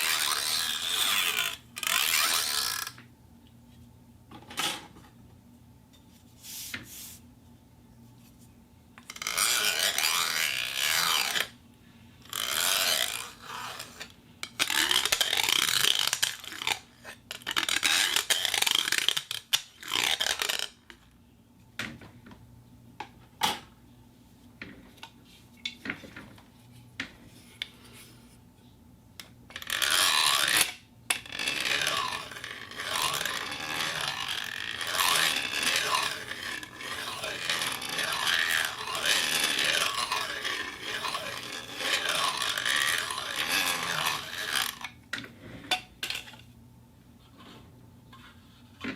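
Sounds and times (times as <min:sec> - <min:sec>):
plastic cup rubbed and scraped: 0:00.0 - 0:03.0, 0:09.1 - 0:11.6, 0:12.3 - 0:20.8, 0:29.6 - 0:45.6.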